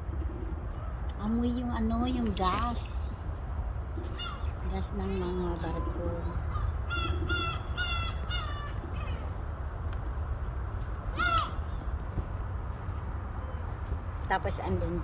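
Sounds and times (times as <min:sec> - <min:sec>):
seagulls calling: 0:00.0 - 0:03.2, 0:03.8 - 0:09.5, 0:11.1 - 0:12.0.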